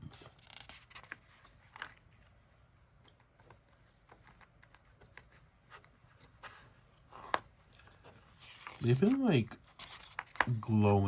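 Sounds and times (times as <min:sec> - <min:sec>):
packaging rustling: 0:07.2 - 0:10.6.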